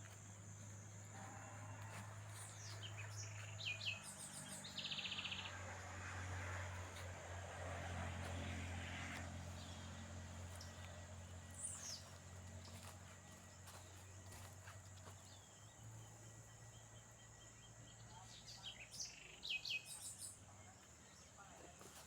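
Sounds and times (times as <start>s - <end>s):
low distant hum: 0.0s - 22.0s
birds chirping: 1.8s - 5.7s, 8.3s - 22.0s.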